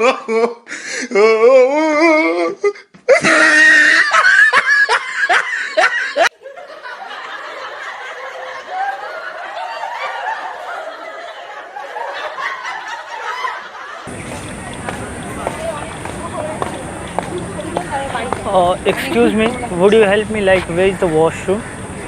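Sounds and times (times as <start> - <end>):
loud laughter: 3.1 - 14.2
faint voices: 14.1 - 22.0.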